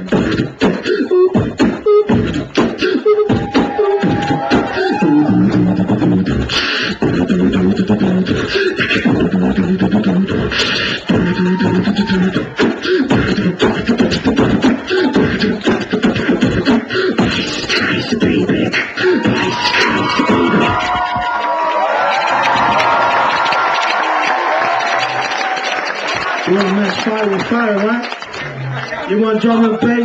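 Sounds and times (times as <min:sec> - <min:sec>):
person beatboxing: 0:00.0 - 0:21.3, 0:22.1 - 0:23.9.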